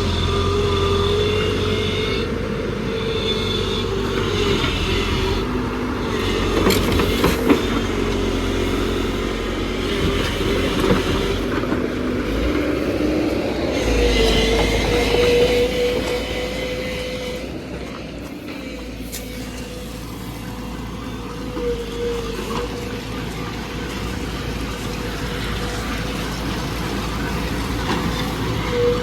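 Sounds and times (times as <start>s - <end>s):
excavator engine and hydraulics: 0.0s - 29.0s.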